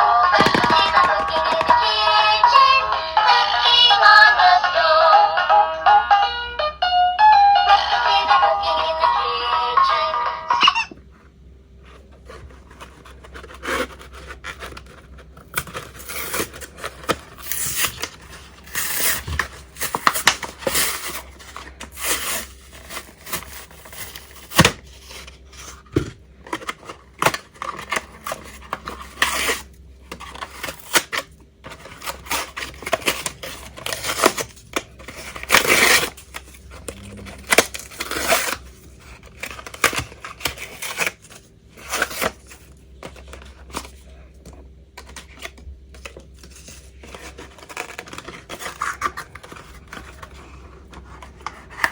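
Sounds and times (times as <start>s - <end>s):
plastic packaging rustling: 0.3s - 2.4s, 12.2s - 44.2s, 45.1s - 51.9s.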